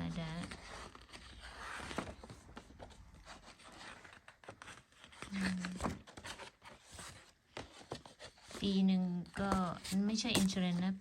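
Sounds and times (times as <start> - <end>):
paper rustling and scraping: 0.1 - 11.0
person humming: 5.3 - 5.9.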